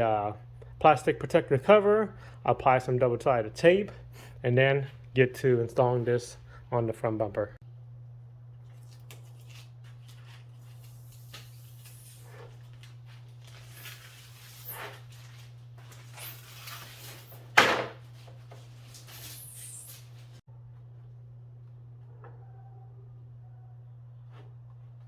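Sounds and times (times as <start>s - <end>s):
steady low hum: 0.0s - 25.0s
plastic film peeling and rustling: 8.6s - 20.4s.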